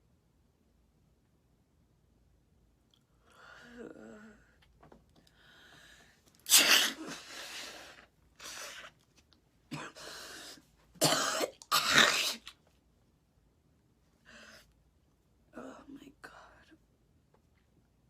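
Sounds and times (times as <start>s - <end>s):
woman coughing: 9.7s - 10.0s, 11.0s - 12.4s.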